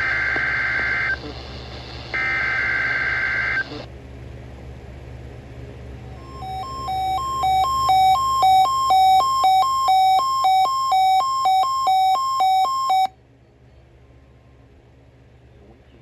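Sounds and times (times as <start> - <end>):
two-tone electronic alarm: 6.2 - 13.2.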